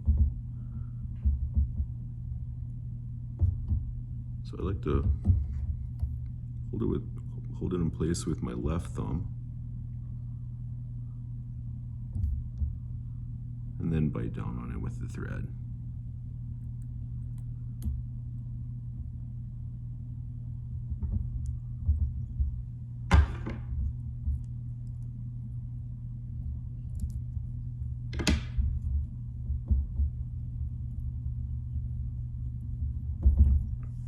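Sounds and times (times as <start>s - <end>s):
soft low handling thumps: 0.0s - 2.6s, 3.2s - 6.4s, 28.6s - 30.4s, 32.8s - 34.0s
steady low hum: 0.0s - 34.0s.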